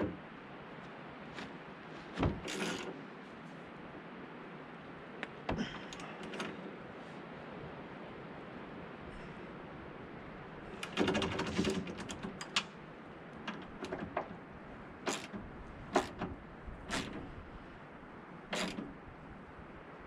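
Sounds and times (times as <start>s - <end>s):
metallic clicks and knocks: 10.8s - 12.8s, 13.4s - 14.4s, 15.1s - 17.3s.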